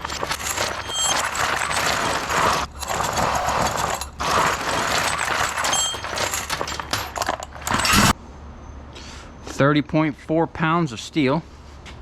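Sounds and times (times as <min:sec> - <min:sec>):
scrap steel rattling in a bucket: 0:00.0 - 0:08.2.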